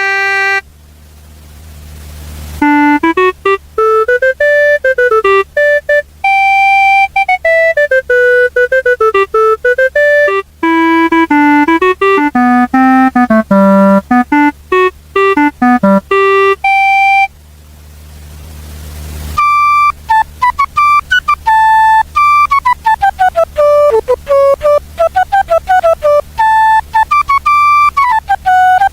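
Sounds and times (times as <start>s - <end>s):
electronic keyboard note runs: 0.0s - 0.6s, 2.6s - 17.3s, 19.4s - 28.9s.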